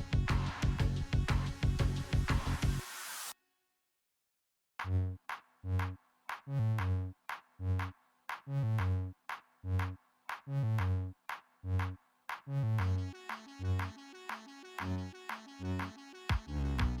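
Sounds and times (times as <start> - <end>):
drum machine beat: 0.0 - 2.8, 11.8 - 17.0
synth bass notes: 0.0 - 2.8, 4.8 - 7.9, 8.5 - 17.0.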